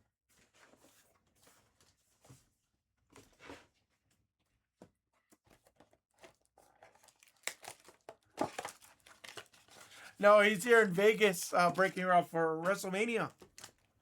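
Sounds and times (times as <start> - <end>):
card wrappers tearing and crinkling: 6.8 - 12.8.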